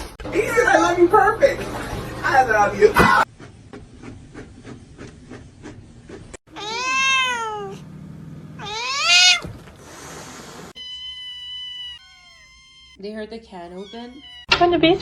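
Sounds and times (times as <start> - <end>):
cat meowing: 6.5 - 7.8, 8.6 - 9.5, 10.8 - 13.0, 13.7 - 14.5.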